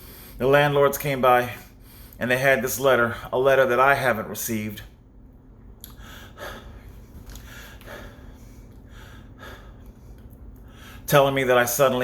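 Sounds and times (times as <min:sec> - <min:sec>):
man breathing: 0:00.0 - 0:00.4, 0:01.6 - 0:02.2, 0:05.8 - 0:11.1
faint low hum: 0:00.0 - 0:12.0.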